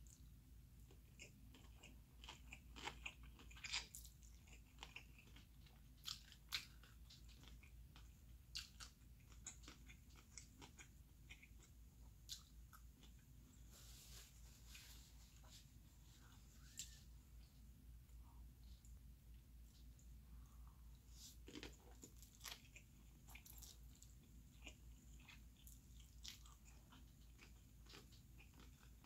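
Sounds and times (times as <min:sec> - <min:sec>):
wet chewing and mouth smacks: 0:00.9 - 0:13.3, 0:21.4 - 0:29.0.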